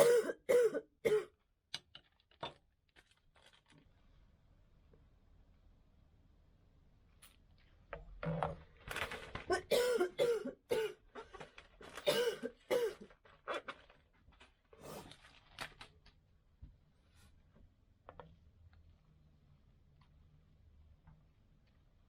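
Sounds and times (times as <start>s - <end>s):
person coughing: 0.0s - 1.4s, 9.5s - 11.1s, 12.0s - 13.0s.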